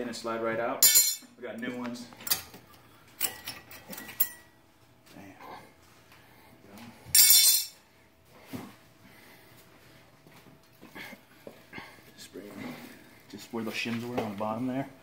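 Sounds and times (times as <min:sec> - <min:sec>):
metal clink with ring: 0:00.8 - 0:01.3, 0:03.2 - 0:04.5, 0:07.2 - 0:07.8
metal parts clicking and tapping: 0:03.2 - 0:04.4.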